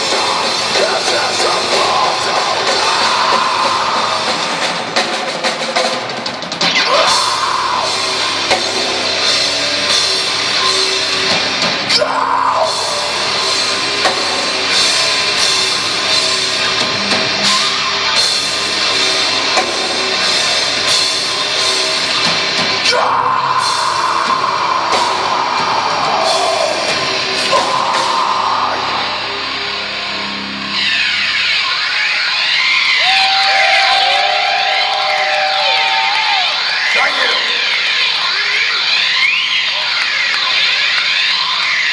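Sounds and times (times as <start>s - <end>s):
person singing: 0.0s - 4.7s, 6.7s - 9.1s, 22.8s - 29.4s
drum kit: 0.0s - 29.6s
heavy metal band playing: 0.0s - 41.9s.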